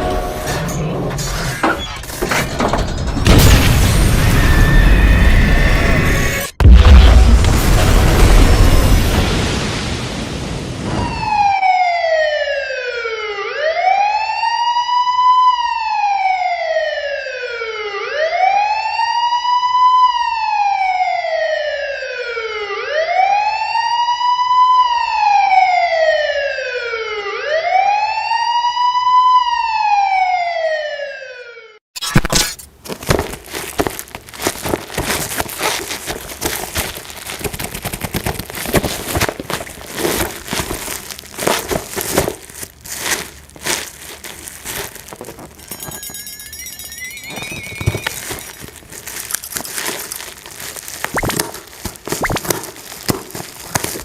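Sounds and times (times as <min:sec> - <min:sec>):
wailing siren: 0:04.2 - 0:06.6, 0:10.8 - 0:31.8
crackling rustling noise: 0:32.3 - 0:54.0.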